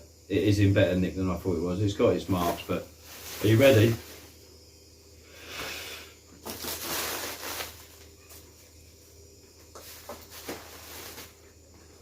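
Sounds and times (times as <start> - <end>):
packaging rustling and crinkling: 6.4 - 8.5, 9.7 - 11.5.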